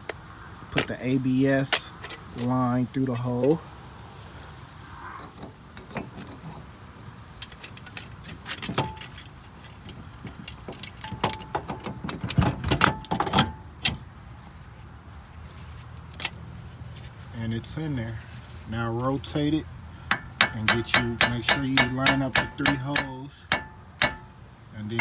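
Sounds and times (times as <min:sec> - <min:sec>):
metal parts clinking and knocking: 0:07.4 - 0:14.0, 0:20.1 - 0:24.4.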